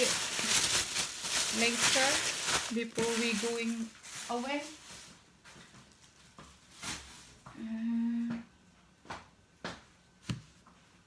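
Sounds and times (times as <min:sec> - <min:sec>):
person humming: 0:07.6 - 0:08.5.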